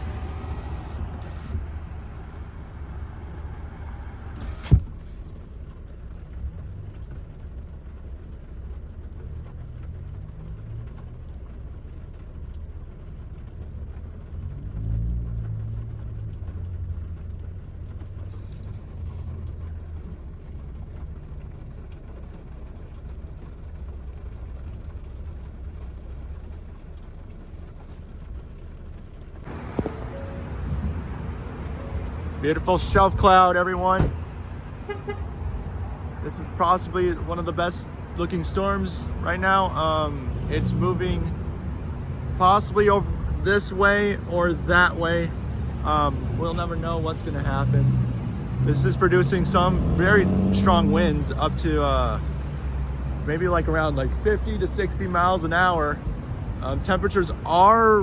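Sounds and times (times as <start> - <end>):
car engine and road rumble: 0.0 - 58.0.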